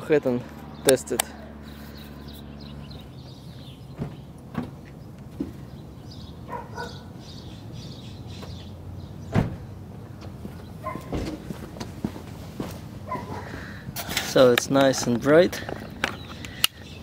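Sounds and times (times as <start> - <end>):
sharp thump: 9.3 - 9.6
clicks and knocks of handling: 14.1 - 16.8.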